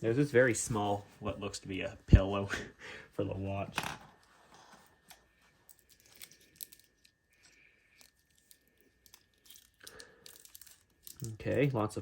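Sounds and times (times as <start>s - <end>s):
plastic packaging crinkling: 5.0s - 12.0s.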